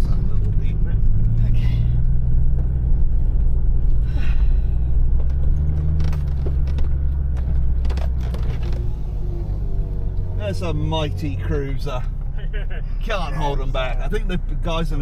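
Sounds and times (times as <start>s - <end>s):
engine running: 0.0s - 15.0s
knocks and rattles: 5.1s - 8.8s.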